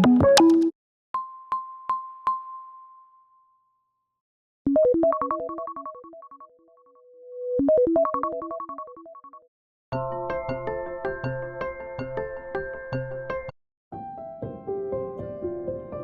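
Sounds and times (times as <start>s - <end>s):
bell-like phone pings: 4.7s - 6.7s
chiming ringtone melody: 4.7s - 6.7s, 7.6s - 9.2s.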